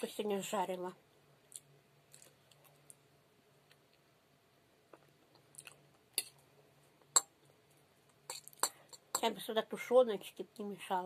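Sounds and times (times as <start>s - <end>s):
faint steady hum: 0.0s - 11.0s
person chewing: 1.5s - 3.0s, 4.9s - 6.4s, 8.1s - 9.1s.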